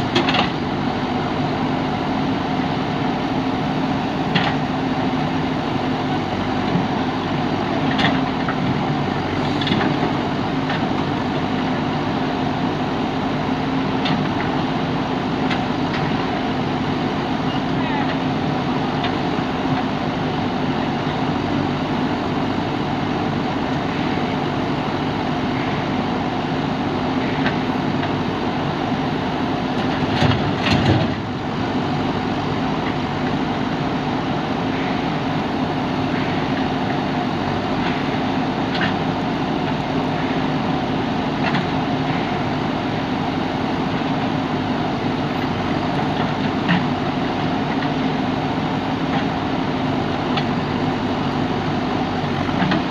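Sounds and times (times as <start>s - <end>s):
diesel engine running: 0.0s - 52.9s.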